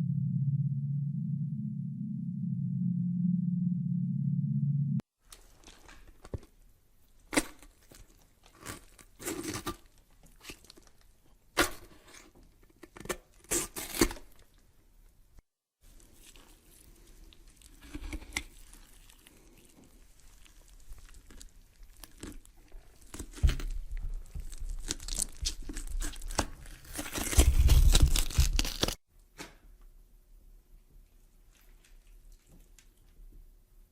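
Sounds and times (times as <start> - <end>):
crunching and tearing: 7.2 - 14.6, 15.9 - 29.0
sharp snaps and cracks: 17.4 - 29.7.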